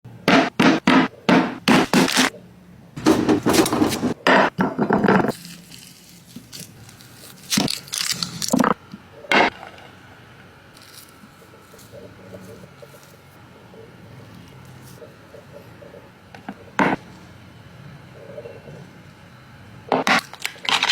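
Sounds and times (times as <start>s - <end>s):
food crackling and scraping: 3.0s - 4.2s, 4.9s - 8.8s, 10.7s - 13.4s.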